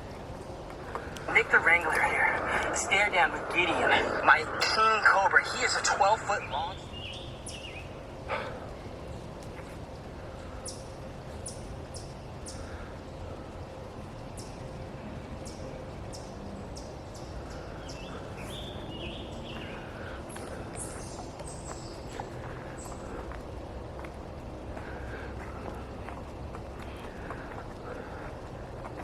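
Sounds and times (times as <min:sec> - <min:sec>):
low background noise: 0:00.0 - 0:29.0
footsteps on dirt trail: 0:18.6 - 0:29.0.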